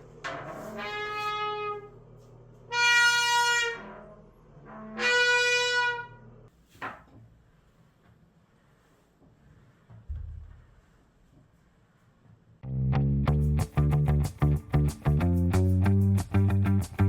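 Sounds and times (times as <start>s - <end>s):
shower door squealing: 2.8s - 6.2s.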